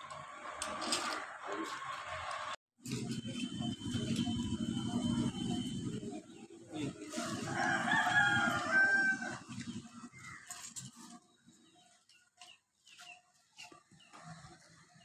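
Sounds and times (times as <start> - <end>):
rooster crowing: 7.2 - 9.5.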